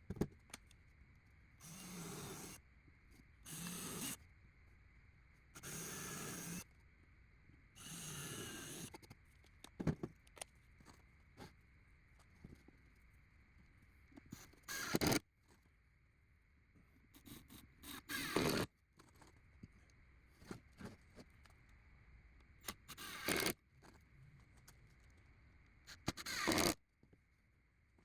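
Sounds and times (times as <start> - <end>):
cordless drill driving screws: 1.6 - 2.6, 14.7 - 15.2, 18.1 - 18.6, 22.9 - 23.5, 26.1 - 26.8.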